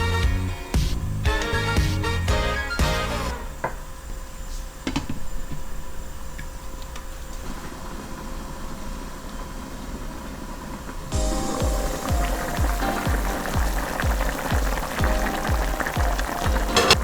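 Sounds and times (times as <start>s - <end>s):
music track: 0.0s - 3.6s, 11.1s - 17.0s.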